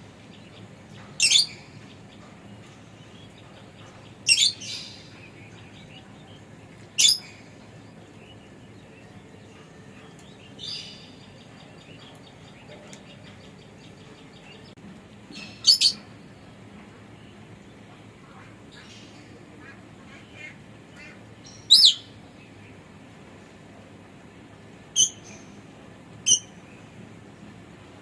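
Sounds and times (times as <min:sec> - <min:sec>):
lovebirds chirping: 0:00.2 - 0:16.3, 0:18.7 - 0:22.8.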